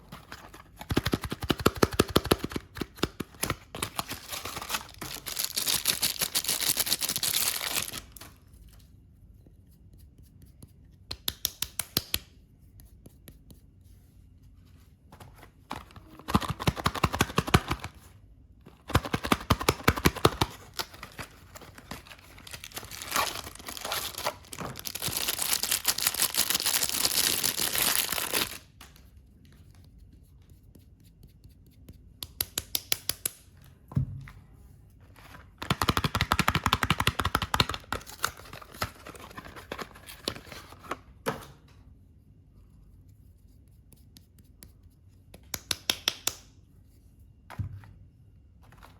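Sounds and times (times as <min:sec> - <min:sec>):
wrapping crackling and tearing: 0:03.8 - 0:08.4, 0:19.0 - 0:28.7.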